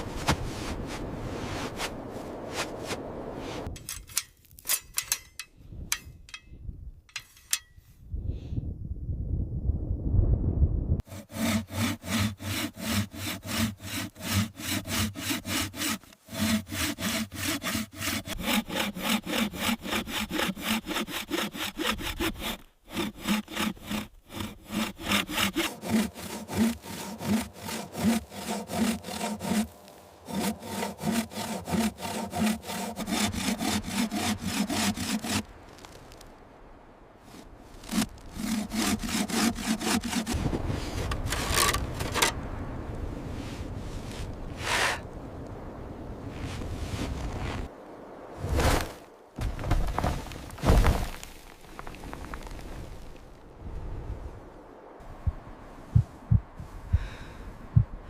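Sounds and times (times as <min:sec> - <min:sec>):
hand saw cutting wood: 0:11.0 - 0:35.4, 0:37.8 - 0:40.4, 0:41.0 - 0:42.3.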